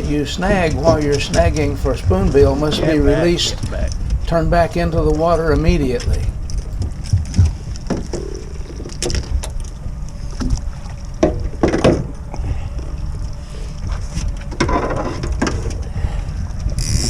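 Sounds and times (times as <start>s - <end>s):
wind on microphone: 0.0s - 9.6s, 15.4s - 17.0s
boat engine low rumble: 0.0s - 17.0s.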